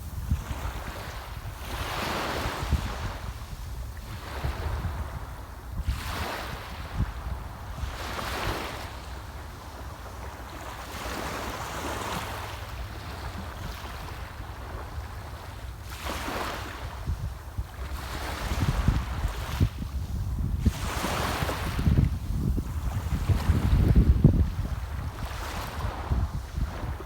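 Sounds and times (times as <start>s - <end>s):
sea waves washing ashore: 0.0s - 27.0s
wind rumble on microphone: 0.0s - 27.0s.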